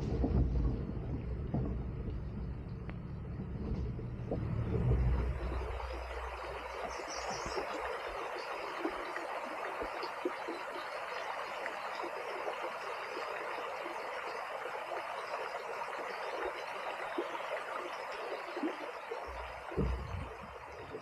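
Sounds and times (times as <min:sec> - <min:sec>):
low rumble: 0:00.0 - 0:07.6, 0:19.3 - 0:21.0
stream water rushing: 0:04.1 - 0:21.0.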